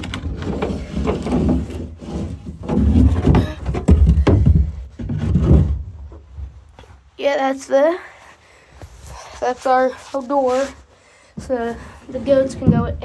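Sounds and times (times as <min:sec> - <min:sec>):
wooden door knocks and scraping: 0:00.0 - 0:06.2, 0:12.2 - 0:13.0
rubbing on phone microphone: 0:08.8 - 0:13.0.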